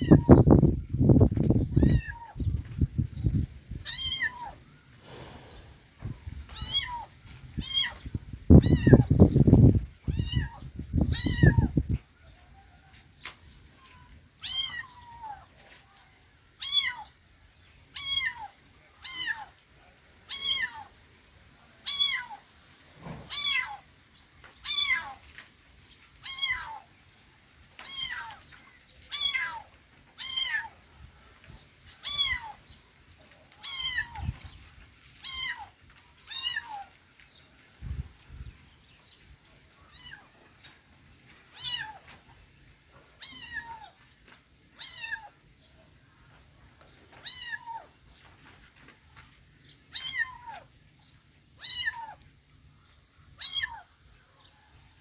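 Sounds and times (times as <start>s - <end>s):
kitten meowing: 1.8s - 2.4s, 3.8s - 4.6s, 8.6s - 9.1s, 10.1s - 11.7s, 50.0s - 50.6s, 51.6s - 52.2s, 53.4s - 53.8s.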